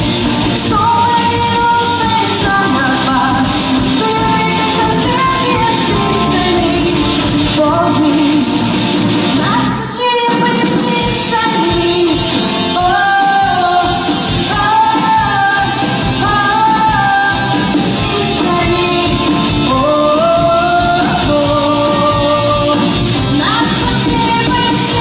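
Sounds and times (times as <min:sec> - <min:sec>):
rock band playing: 0:00.0 - 0:25.0
person singing long held notes: 0:12.8 - 0:25.0.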